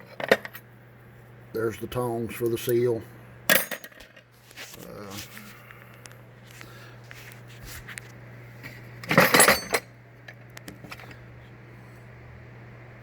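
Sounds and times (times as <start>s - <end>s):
metal tools clinking in toolbox: 3.5s - 4.1s, 9.1s - 9.9s.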